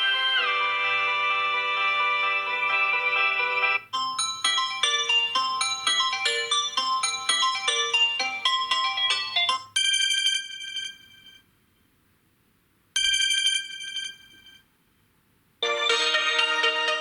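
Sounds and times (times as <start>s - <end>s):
busy ringtone melody: 0.0s - 11.3s, 13.0s - 14.4s, 15.6s - 17.0s
melodic ringtone notes: 2.6s - 11.0s, 15.6s - 17.0s.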